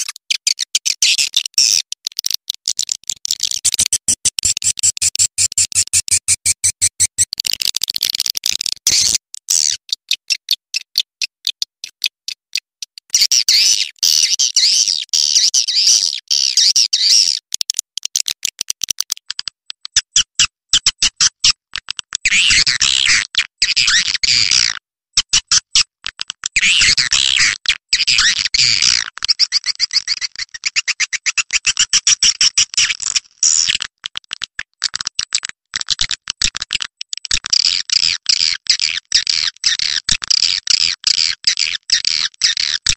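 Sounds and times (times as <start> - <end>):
swiftlet clicks and twitters: 0.0 - 14.3.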